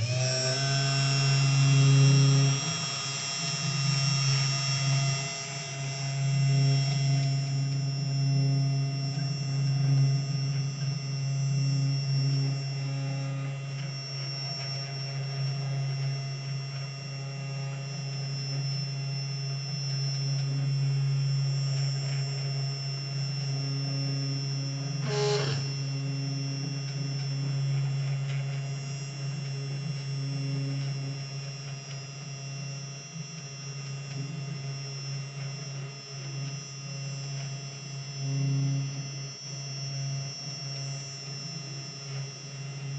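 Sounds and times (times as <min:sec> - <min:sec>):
stepper motors whining: 0:00.0 - 0:08.2, 0:24.8 - 0:26.0
spindle motor humming: 0:00.0 - 0:30.2.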